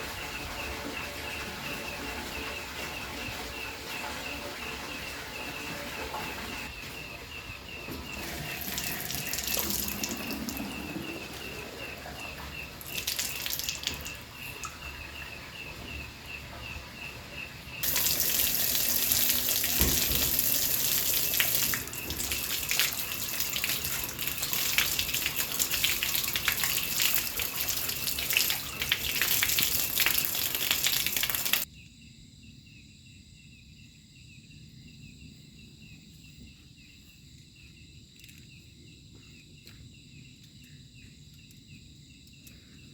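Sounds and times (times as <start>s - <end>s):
insects chirping: 0.0s - 42.9s
running water rushing: 8.0s - 15.2s, 17.8s - 31.6s.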